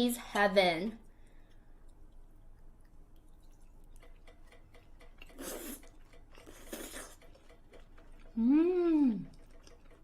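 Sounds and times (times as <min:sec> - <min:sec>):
chewing with wet mouth clicks: 0:01.2 - 0:08.4, 0:09.2 - 0:10.0.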